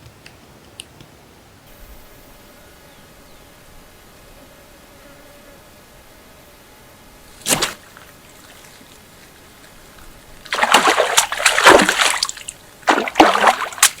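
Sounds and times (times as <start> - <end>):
water splashing: 7.2 - 14.0.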